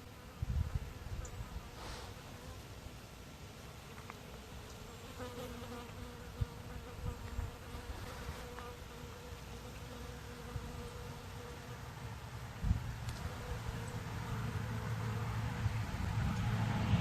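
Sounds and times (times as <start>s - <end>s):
flying insect buzzing: 3.8s - 11.8s, 13.1s - 15.4s.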